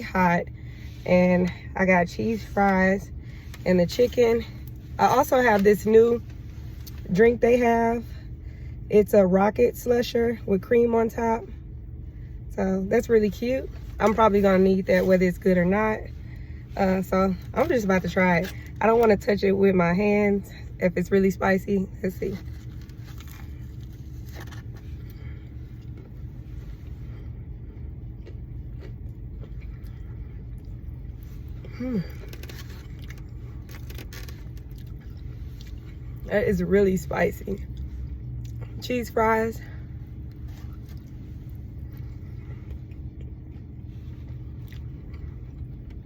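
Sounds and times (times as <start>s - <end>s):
steady low rumble: 0.0s - 46.0s
person eating crunchy food: 22.4s - 36.2s.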